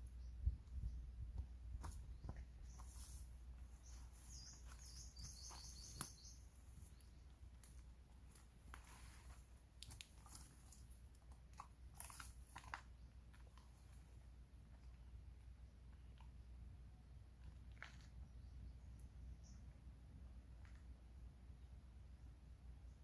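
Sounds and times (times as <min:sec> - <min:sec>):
bird chirping: 0:00.0 - 0:07.5, 0:18.2 - 0:19.8
soft crunches and crackles: 0:01.8 - 0:15.0, 0:17.4 - 0:18.3.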